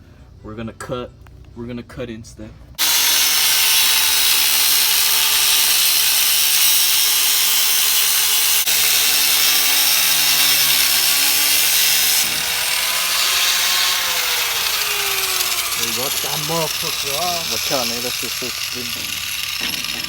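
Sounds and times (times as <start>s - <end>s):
angle grinder cutting metal: 2.8s - 20.0s.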